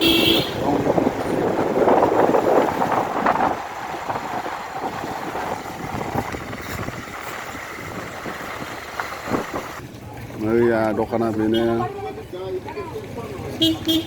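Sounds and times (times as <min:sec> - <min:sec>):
wind on microphone: 0:00.0 - 0:09.8
traffic noise: 0:00.0 - 0:14.0.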